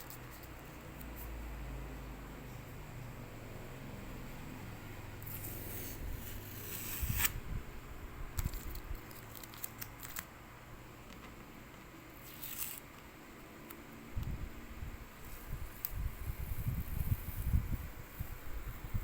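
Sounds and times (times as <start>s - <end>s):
masking tape being peeled off: 5.2s - 7.4s, 8.4s - 10.3s, 12.2s - 13.0s.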